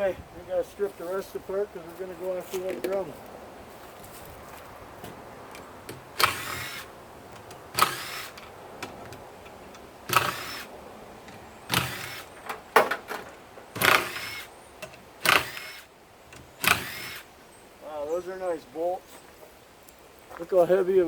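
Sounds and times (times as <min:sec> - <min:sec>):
power driver whining: 0:05.6 - 0:17.3.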